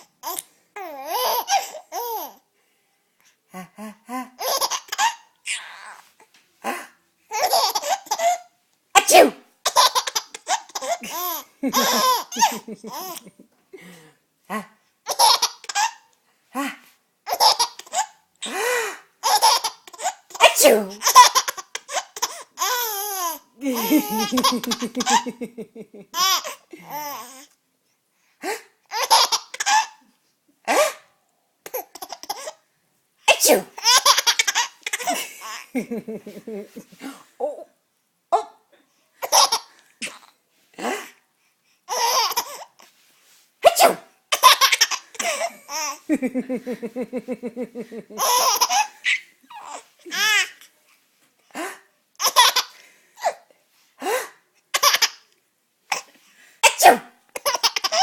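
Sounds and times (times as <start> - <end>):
baby laughing: 0.0 - 2.4, 4.4 - 6.0, 7.3 - 8.5, 9.6 - 13.5, 15.1 - 16.1, 17.3 - 18.6, 19.2 - 27.4, 28.9 - 30.0, 31.6 - 32.6, 33.5 - 36.9, 39.2 - 40.3, 41.9 - 42.8, 44.3 - 50.6, 52.2 - 53.4, 54.7 - 55.3, 57.3 - 58.0
adult fake sneezes: 9.0 - 9.5, 20.4 - 21.0, 33.3 - 33.8, 43.6 - 44.2, 56.6 - 57.2.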